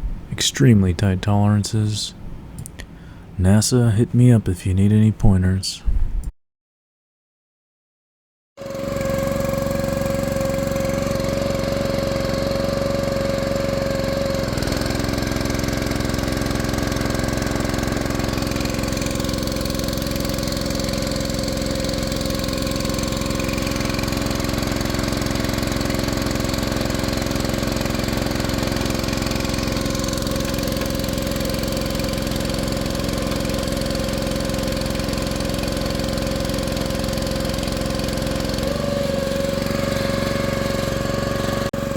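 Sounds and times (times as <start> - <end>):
small gasoline engine running: 8.6 - 41.9.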